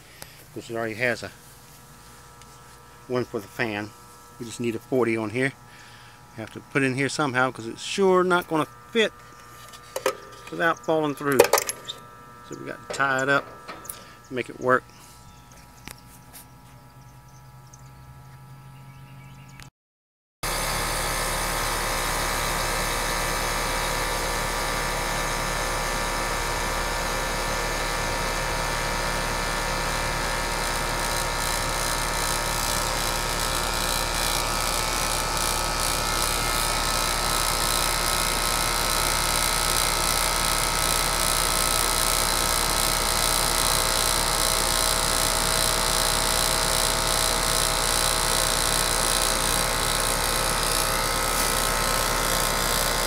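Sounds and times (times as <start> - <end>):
air conditioner hum and whir: 0.0 - 19.6.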